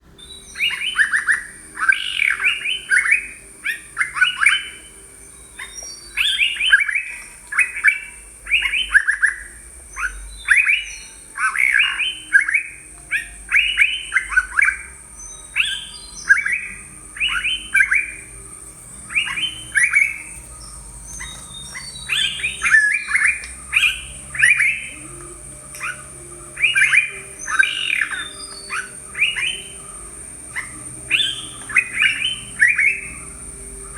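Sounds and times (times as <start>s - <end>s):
bulbul chattering calls: 0.1s - 33.9s.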